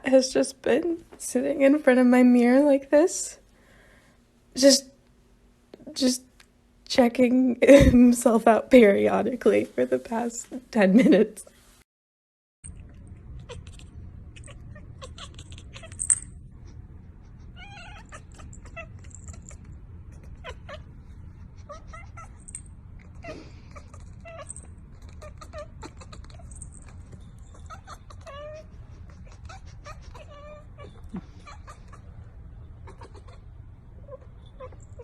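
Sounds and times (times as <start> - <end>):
steady low hum: 12.6 - 35.0
cat meowing: 17.6 - 19.4.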